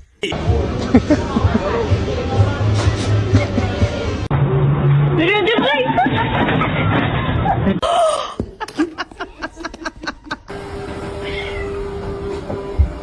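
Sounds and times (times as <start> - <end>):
cat crying and meowing: 11.1 - 12.0.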